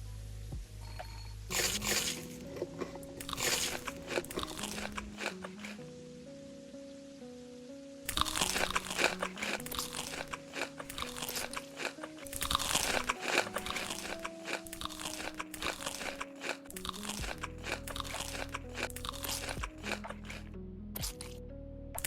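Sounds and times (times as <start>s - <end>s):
soft background music: 0.0s - 22.0s
chewing crisp food: 1.5s - 5.8s, 8.1s - 20.4s.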